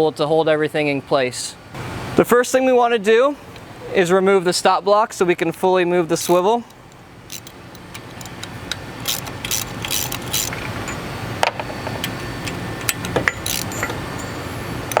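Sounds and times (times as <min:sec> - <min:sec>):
steady low hum: 0:05.4 - 0:15.0
wrench metal clicks: 0:05.5 - 0:14.0.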